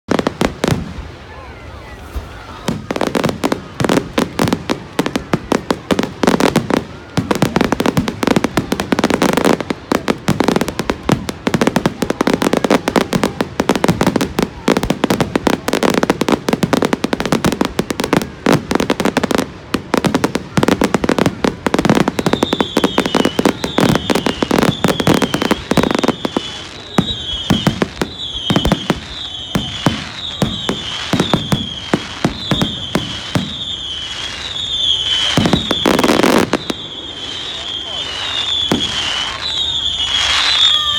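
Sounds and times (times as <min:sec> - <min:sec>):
fireworks bangs: 0:00.1 - 0:40.9
falling whistle: 0:22.0 - 0:40.9.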